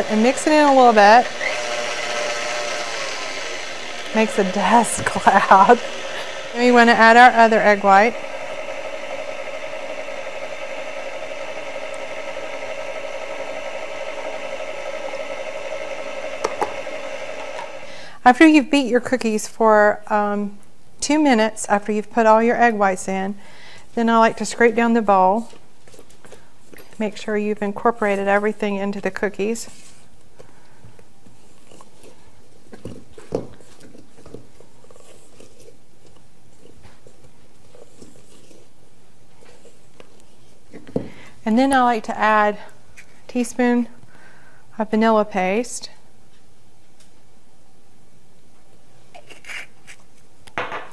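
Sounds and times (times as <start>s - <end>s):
spatula scraping mixing bowl: 0.0s - 17.8s, 31.3s - 40.6s
electric mixer running: 0.0s - 18.1s.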